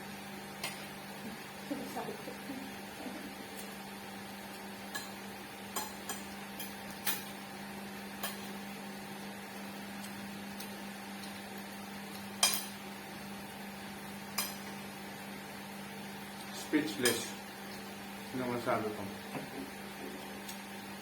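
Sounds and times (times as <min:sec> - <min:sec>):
cutlery clinking against dishes: 0:12.4 - 0:12.8, 0:17.0 - 0:17.3.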